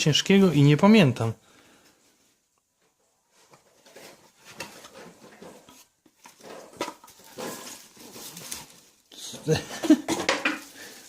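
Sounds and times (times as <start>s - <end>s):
packaging rustling and crinkling: 3.3s - 11.0s.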